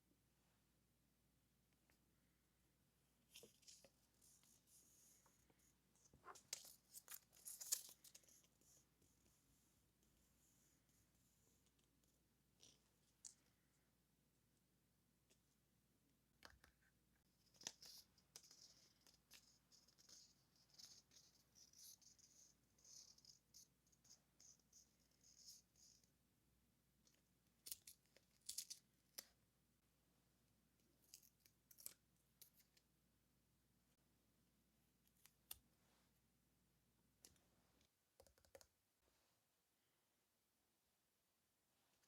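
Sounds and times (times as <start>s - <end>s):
paper rustling: 3.3s - 8.8s.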